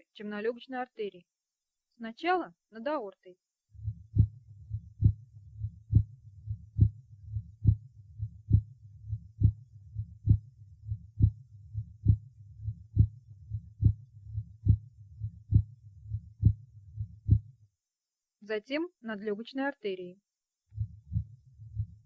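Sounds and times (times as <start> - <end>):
heartbeat: 3.8 - 17.6, 20.7 - 22.0.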